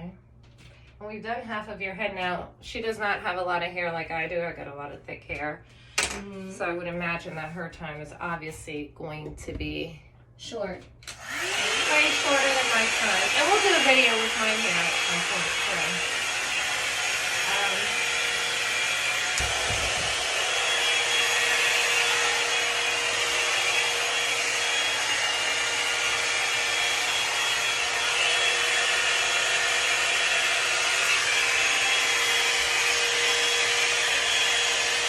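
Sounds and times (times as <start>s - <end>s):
hot air brush fan whirring: 11.0s - 35.0s.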